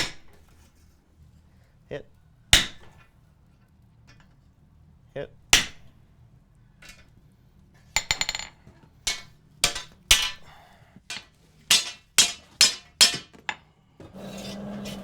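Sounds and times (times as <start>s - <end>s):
sledgehammer clanging on steel: 11.1s - 15.0s.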